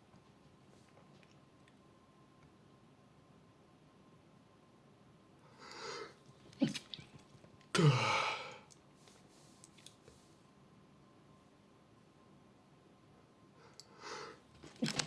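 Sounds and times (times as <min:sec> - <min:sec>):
stifled sneezes: 0:06.6 - 0:07.1.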